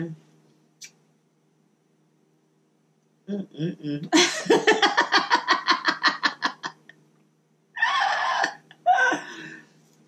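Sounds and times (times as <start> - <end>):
woman laughing hard: 4.1 - 6.9, 7.8 - 9.6.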